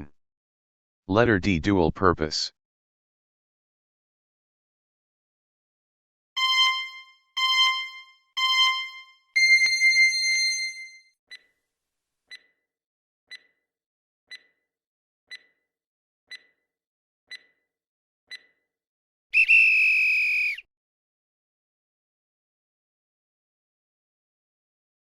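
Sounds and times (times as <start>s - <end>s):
short electronic beeps: 6.4s - 10.9s
longer electronic beep: 6.4s - 11.0s
soft timer ticks: 12.3s - 12.6s, 13.3s - 13.6s, 14.3s - 14.7s, 15.3s - 15.7s, 16.3s - 16.7s, 17.3s - 17.6s, 18.3s - 18.6s.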